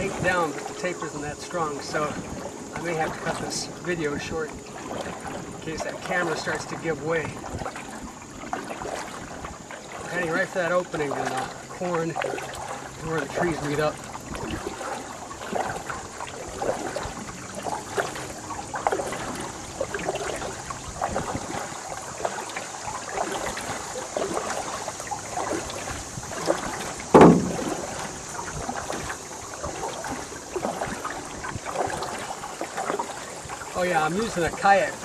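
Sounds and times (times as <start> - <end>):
paddle splashing through water: 0.0 - 35.0
water trickling off paddle: 0.0 - 35.0
thump: 27.1 - 27.9.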